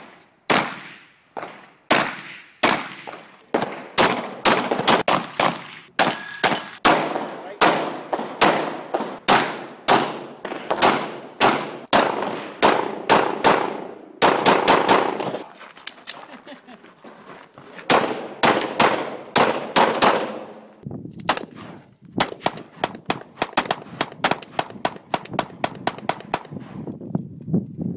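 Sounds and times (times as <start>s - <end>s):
gunshots with echo: 0.5s - 15.4s, 17.9s - 20.6s.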